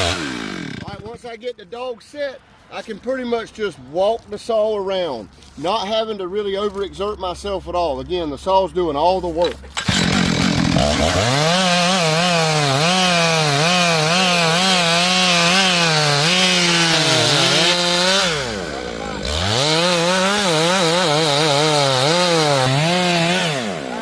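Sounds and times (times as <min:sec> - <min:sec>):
chainsaw cutting log: 0:00.0 - 0:01.2, 0:09.4 - 0:24.0.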